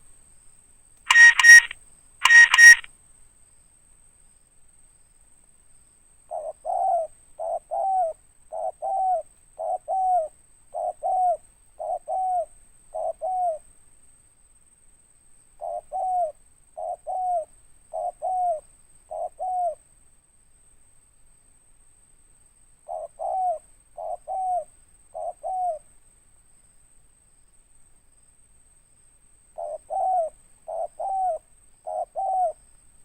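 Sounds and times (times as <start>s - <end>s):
dove cooing: 29.6s - 32.6s.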